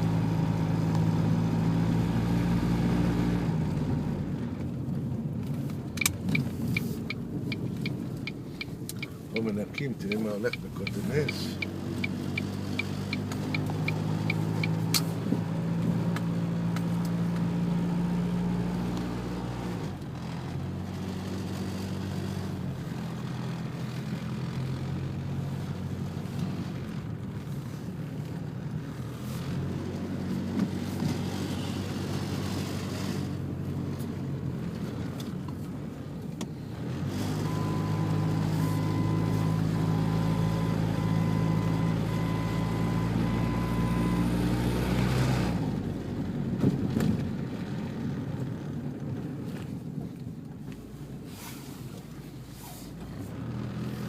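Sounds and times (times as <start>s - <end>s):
car engine running: 0.0s - 54.0s
faint short beep: 37.4s - 44.3s.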